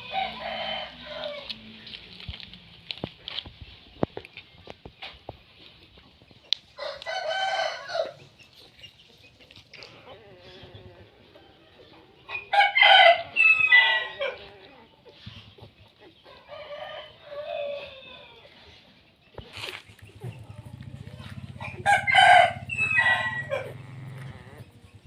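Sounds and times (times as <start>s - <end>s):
rooster crowing: 0.0s - 1.5s, 6.8s - 8.2s, 12.5s - 14.4s, 21.0s - 24.7s.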